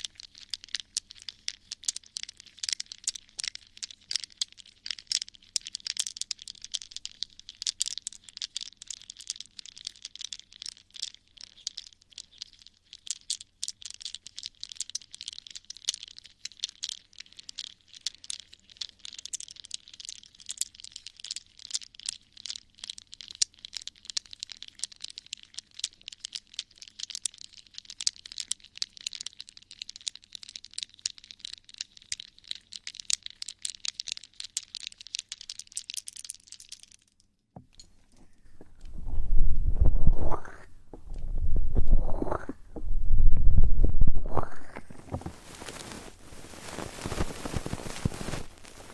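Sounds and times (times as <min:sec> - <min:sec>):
fine crackling and scratching: 0:38.1 - 0:48.9.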